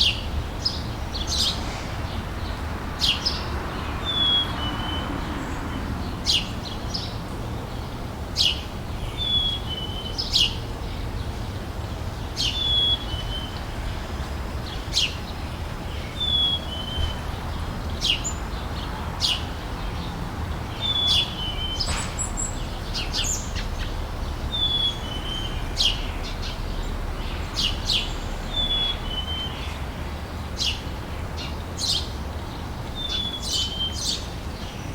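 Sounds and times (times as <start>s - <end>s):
birds chirping: 0.0s - 7.7s, 8.4s - 34.9s.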